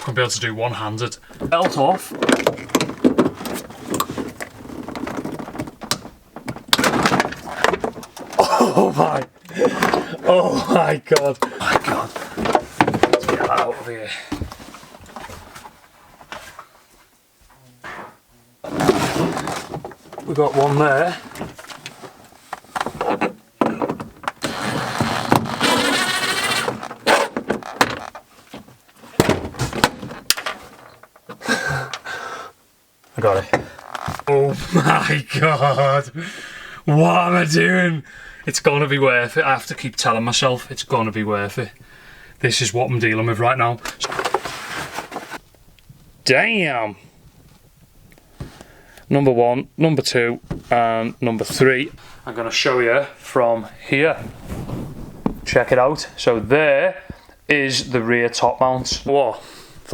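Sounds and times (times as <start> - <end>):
rustling: 0.0 - 8.5, 11.6 - 32.0, 37.6 - 46.3, 50.4 - 59.9
metal knocks and clunks: 1.3 - 8.4.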